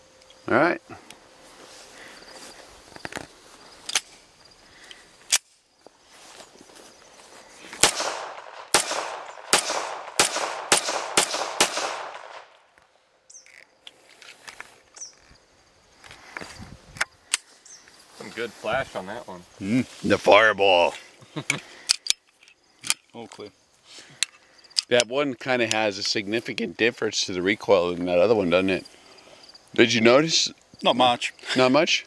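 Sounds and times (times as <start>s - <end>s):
gunshots with echo: 7.8s - 12.5s.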